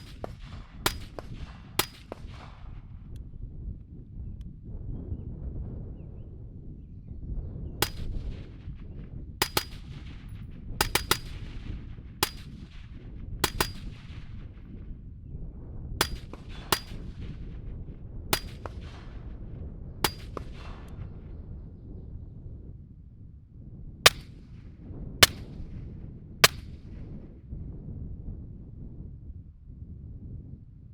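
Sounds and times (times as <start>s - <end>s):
suppressed rifle shots: 0.0s - 2.8s, 7.8s - 8.6s, 9.4s - 14.5s, 16.0s - 17.2s, 18.4s - 19.2s, 20.0s - 21.0s, 24.1s - 24.5s, 25.2s - 25.7s, 26.4s - 26.8s
low wind rumble: 0.0s - 30.9s.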